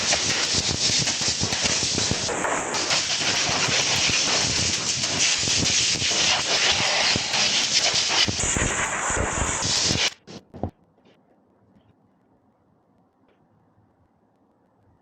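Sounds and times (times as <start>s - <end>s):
sander hissing rasp: 0.0s - 10.4s.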